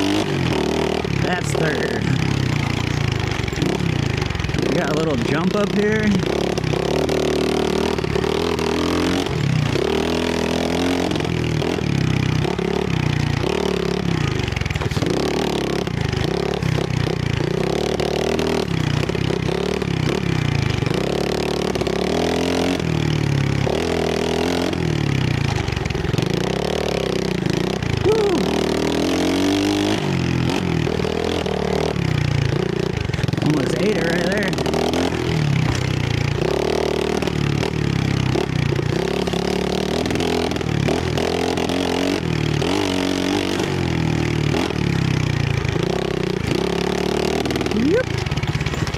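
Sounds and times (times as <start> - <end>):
small motorbike engine revving: 0.0 - 48.9.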